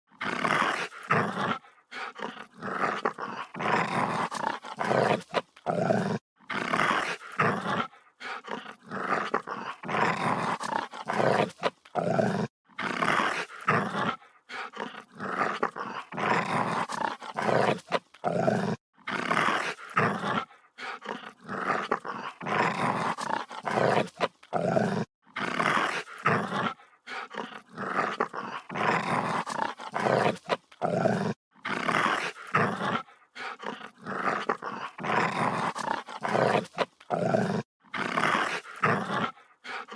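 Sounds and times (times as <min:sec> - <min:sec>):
dog growling: 0:00.1 - 0:39.9.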